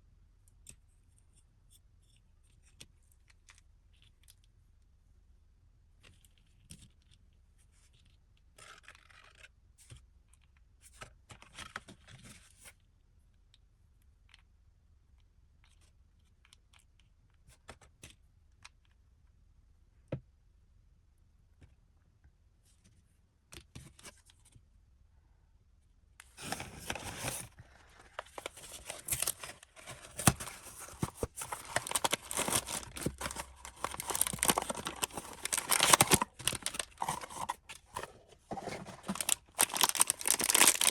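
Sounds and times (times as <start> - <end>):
packaging clicks and rustles: 26.4 - 40.9
wrapper crinkling and tearing: 26.4 - 40.9.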